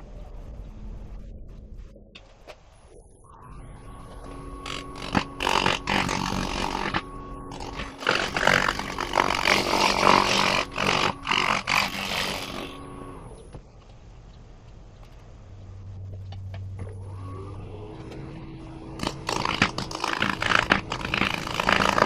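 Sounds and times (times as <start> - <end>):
lathe motor hum: 3.4 - 13.4, 16.9 - 22.0
turning tool scraping wood: 4.6 - 12.8, 19.0 - 22.0.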